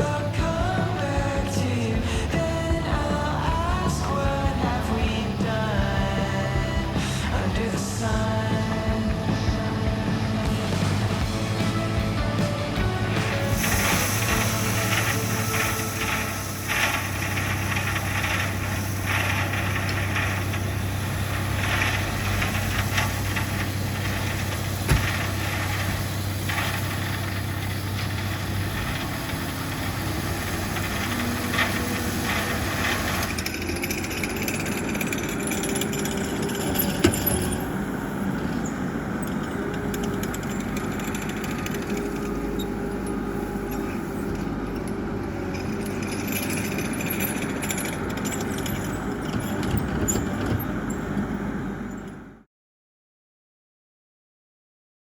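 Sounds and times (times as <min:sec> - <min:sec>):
heavy machinery engine running: 0:00.0 - 0:52.4
sharp metal clanks: 0:21.5 - 0:37.9.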